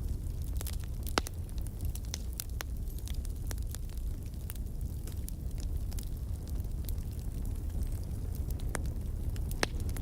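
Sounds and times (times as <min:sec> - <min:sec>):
fire crackling and popping: 0:00.0 - 0:10.0
low fire rumble: 0:00.0 - 0:10.0.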